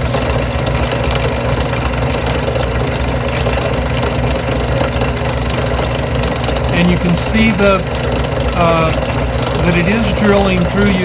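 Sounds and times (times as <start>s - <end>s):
drill press motor running: 0.0s - 11.0s
drill bit grinding through glass: 4.2s - 11.0s.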